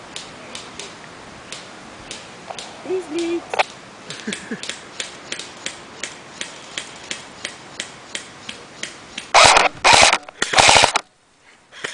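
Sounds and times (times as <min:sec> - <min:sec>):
sharp clicks: 0:00.1 - 0:11.1
airsoft gunfire bursts: 0:09.4 - 0:11.0.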